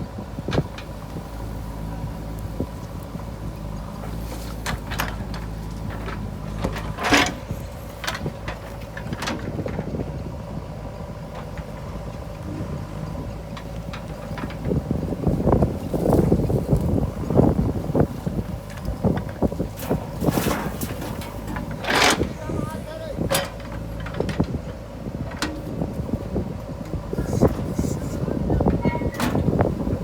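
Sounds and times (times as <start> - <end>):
diesel engine running: 0.0 - 30.0
metallic clanks and knocks: 18.7 - 22.5, 23.2 - 25.9, 28.6 - 30.0.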